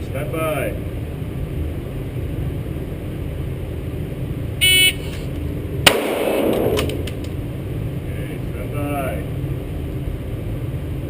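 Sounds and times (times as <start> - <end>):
pistol shot: 5.8 - 7.2.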